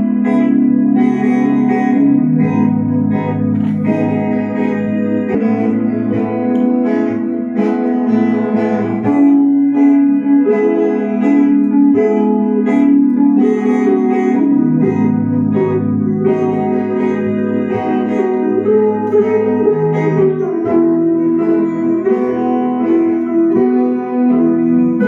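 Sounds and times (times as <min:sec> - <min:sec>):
plucked guitar notes: 0:00.0 - 0:25.0.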